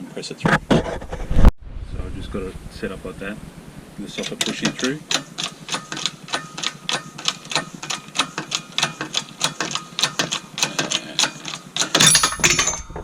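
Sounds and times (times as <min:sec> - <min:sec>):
press tool rapid clicking: 0:04.2 - 0:12.2.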